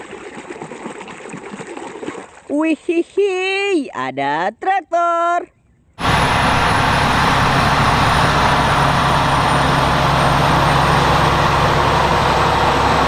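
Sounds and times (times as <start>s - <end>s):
tractor engine running: 6.0s - 13.0s.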